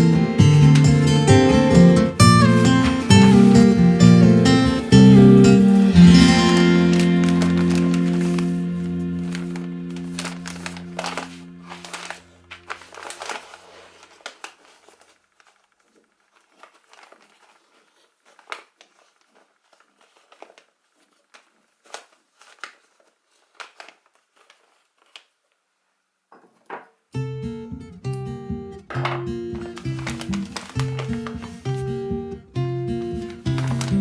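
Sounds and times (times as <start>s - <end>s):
background music: 0.0s - 13.0s, 27.2s - 34.0s
paper crinkling and rustling: 0.0s - 25.7s, 28.9s - 34.0s.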